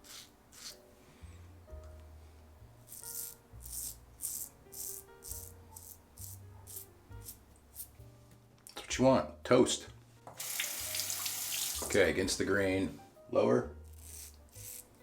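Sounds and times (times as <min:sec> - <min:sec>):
razor scraping stubble: 0:00.0 - 0:00.8, 0:02.9 - 0:08.0, 0:13.8 - 0:15.0.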